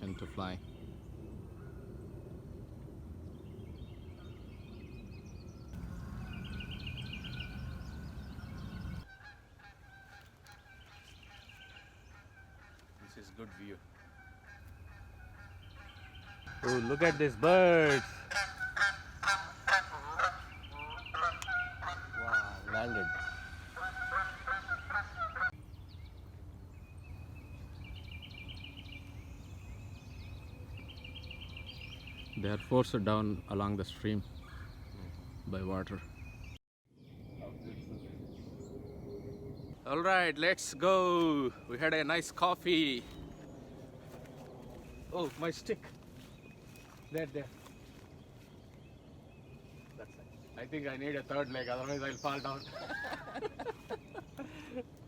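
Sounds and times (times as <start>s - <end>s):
low rumble: 0.6s - 9.1s
geese honking: 5.8s - 25.6s.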